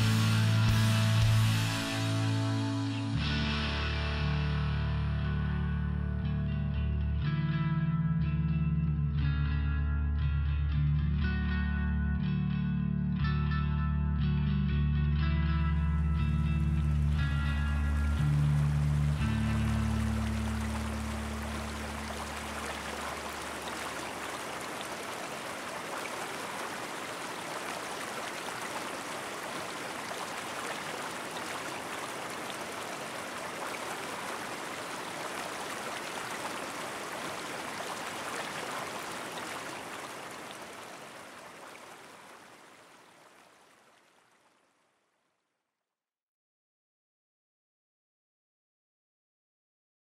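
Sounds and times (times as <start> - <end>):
river water flowing: 16.3 - 45.2.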